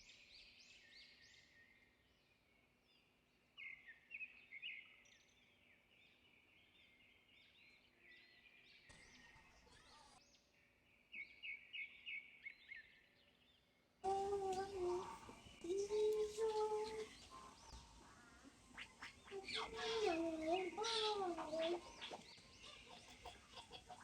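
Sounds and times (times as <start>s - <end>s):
bird chirping: 0.0s - 24.0s.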